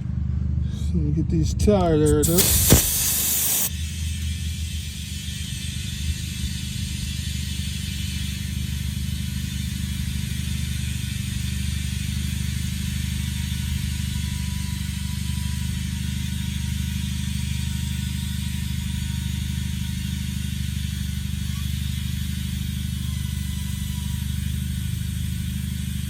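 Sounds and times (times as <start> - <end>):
air compressor running: 0.0 - 26.0
air hissing: 1.6 - 14.2.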